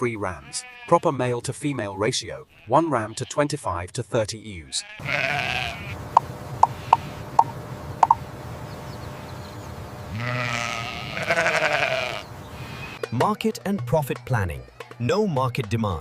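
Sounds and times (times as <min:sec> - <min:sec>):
sheep bleating: 0:00.2 - 0:01.1, 0:02.5 - 0:03.4, 0:04.5 - 0:06.0, 0:06.7 - 0:07.3, 0:10.1 - 0:13.2.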